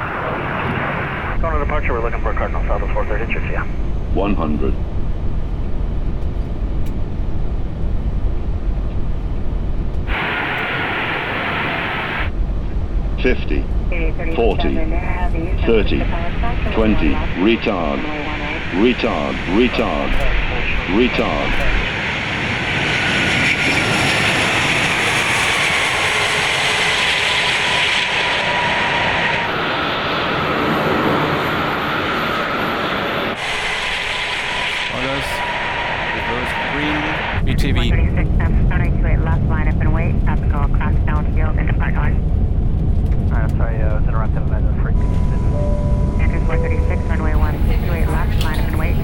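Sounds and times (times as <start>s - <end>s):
airflow and engine rumble: 0.0s - 49.0s.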